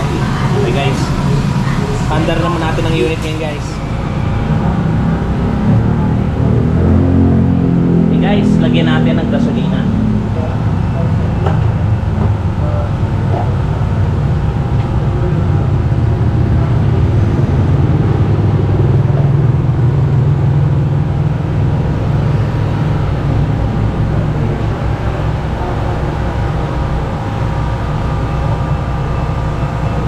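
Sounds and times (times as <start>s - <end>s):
vehicle engine rumbling: 0.0s - 30.0s.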